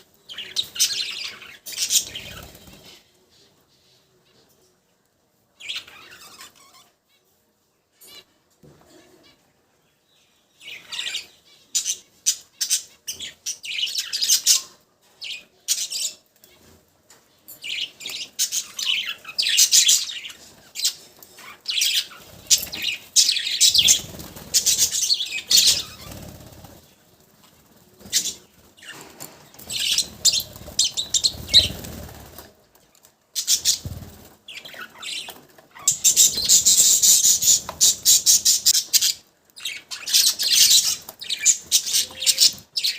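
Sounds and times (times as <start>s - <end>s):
budgerigars chirping: 17.8s - 26.4s, 33.4s - 42.9s.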